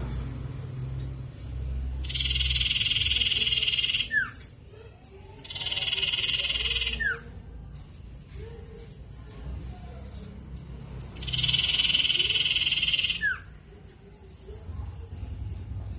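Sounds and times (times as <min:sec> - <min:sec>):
bird singing rapid trills: 0:02.0 - 0:04.5, 0:05.3 - 0:07.4, 0:11.1 - 0:13.6.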